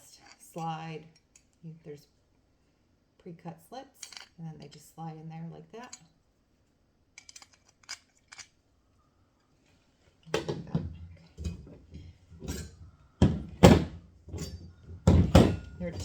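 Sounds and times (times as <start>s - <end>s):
steel pieces clinking: 0.0s - 1.6s, 4.0s - 5.0s, 7.2s - 8.6s, 10.3s - 16.0s
metal pieces knocking and clanking: 10.3s - 16.0s.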